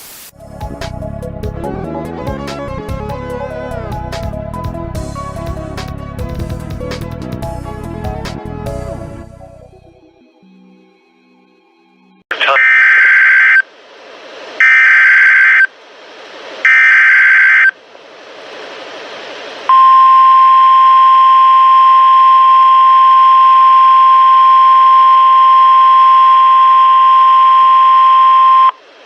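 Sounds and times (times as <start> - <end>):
radio hiss: 12.3 - 19.8
steady warning alarm tone: 12.6 - 13.6, 14.6 - 15.7, 16.6 - 17.7, 19.7 - 28.8
screeching data bursts: 14.6 - 15.7, 16.6 - 17.7.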